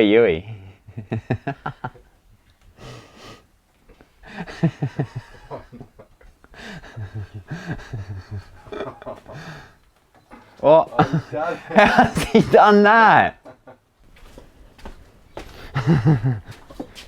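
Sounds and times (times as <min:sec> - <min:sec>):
person laughing and chuckling: 0:00.6 - 0:02.1, 0:04.2 - 0:09.8, 0:10.4 - 0:12.7, 0:15.6 - 0:16.9
breath: 0:02.8 - 0:04.6, 0:06.5 - 0:08.6, 0:09.3 - 0:10.6, 0:15.4 - 0:15.8.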